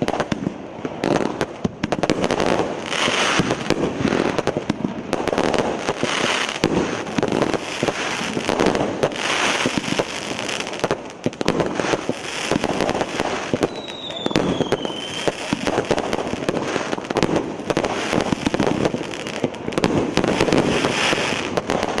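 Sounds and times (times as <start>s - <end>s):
fireworks bangs and crackles: 0.0s - 22.0s
firework whistle: 11.5s - 22.0s.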